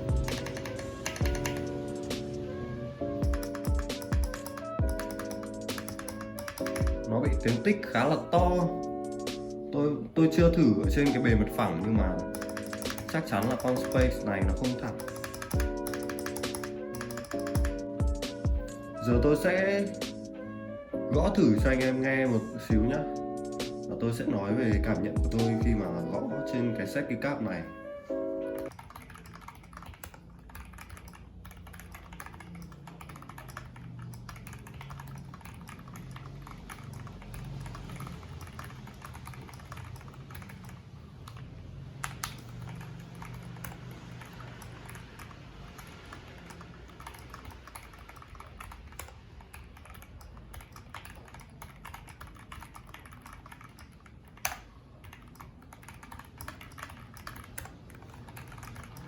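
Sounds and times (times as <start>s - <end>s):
mechanical keyboard typing: 0.0s - 2.4s, 3.2s - 9.4s, 10.4s - 20.2s, 21.2s - 26.1s, 28.6s - 59.0s.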